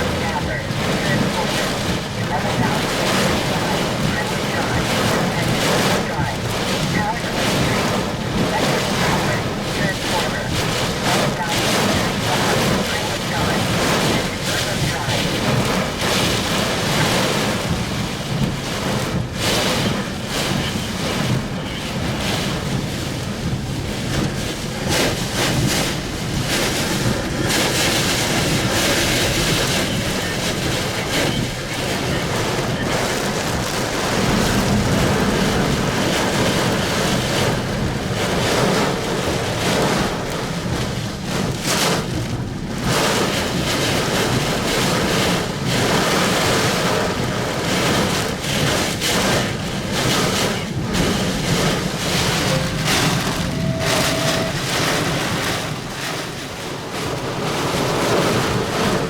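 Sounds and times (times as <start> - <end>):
rain: 0.0 - 59.0
wind gusting over microphone: 0.0 - 59.0.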